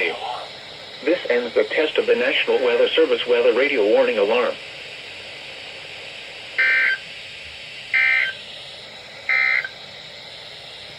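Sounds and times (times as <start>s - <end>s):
warbling two-tone digital data bursts: 6.6s - 7.0s, 7.9s - 8.4s, 9.3s - 9.7s.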